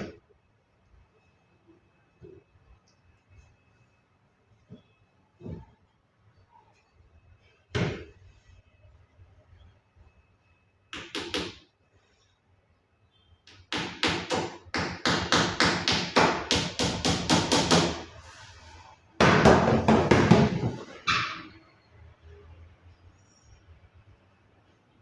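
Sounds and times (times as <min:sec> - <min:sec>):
hammer driving nails into wood: 0:13.6 - 0:18.0.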